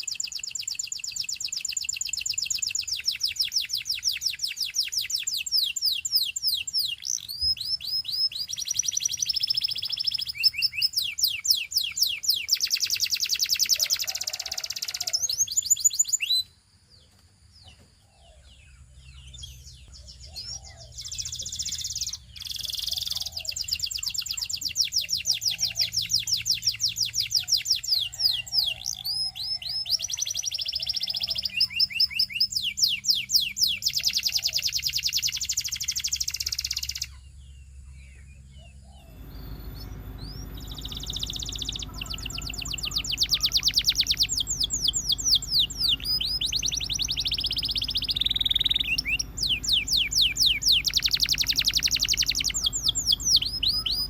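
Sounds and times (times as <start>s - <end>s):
canary singing trills: 0.0s - 54.0s
low steady hum: 37.1s - 54.0s.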